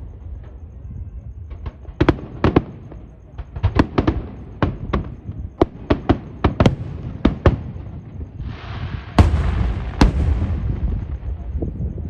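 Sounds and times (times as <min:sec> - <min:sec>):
heavy fireworks booms: 0:00.0 - 0:12.0
fireworks sharp bangs: 0:01.5 - 0:12.0
fireworks dense hiss: 0:05.6 - 0:12.0.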